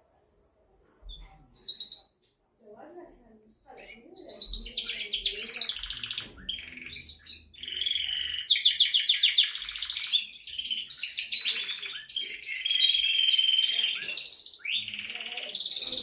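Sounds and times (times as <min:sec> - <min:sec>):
canary singing trills: 0:01.0 - 0:02.2, 0:03.7 - 0:16.0.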